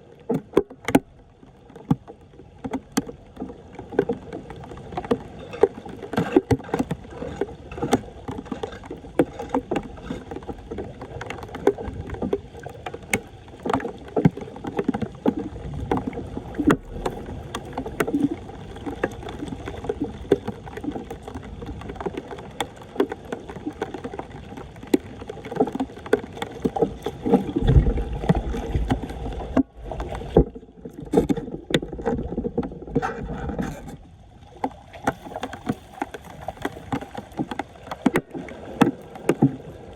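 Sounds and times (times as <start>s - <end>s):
water sloshing and splashing: 0.0s - 39.9s
low rumble: 15.7s - 18.0s, 27.4s - 34.1s
debris knocks and scrapes: 27.2s - 34.0s.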